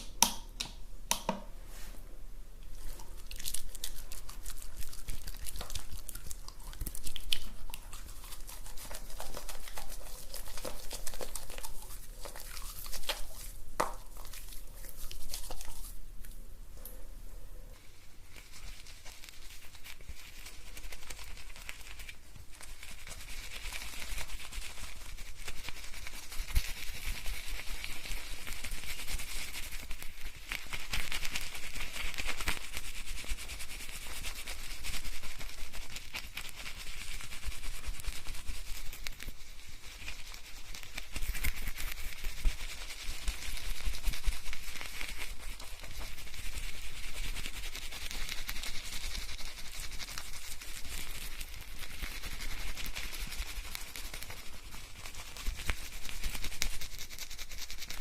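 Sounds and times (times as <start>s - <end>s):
fingers scrubbing lathered hair: 2.8s - 16.1s, 17.8s - 58.0s.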